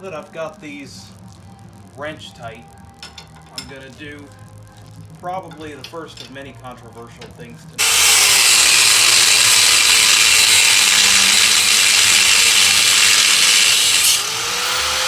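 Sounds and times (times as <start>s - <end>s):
power tool cutting steel: 7.8s - 15.0s.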